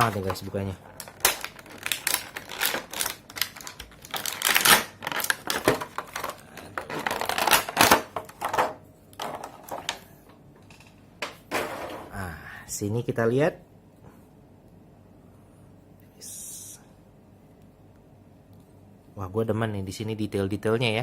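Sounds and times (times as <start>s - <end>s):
plastic packaging crackling: 0.0s - 8.7s.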